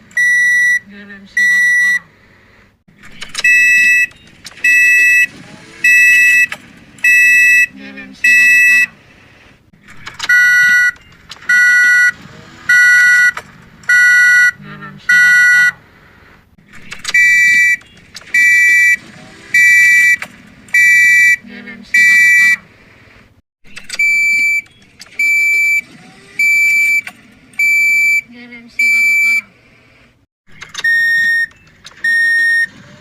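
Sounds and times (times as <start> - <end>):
car warning beeps: 0.2 - 0.8, 1.4 - 2.0, 3.4 - 8.9, 10.3 - 15.8, 17.1 - 20.2, 20.8 - 21.4, 22.0 - 22.6, 23.9 - 29.5, 30.8 - 32.8.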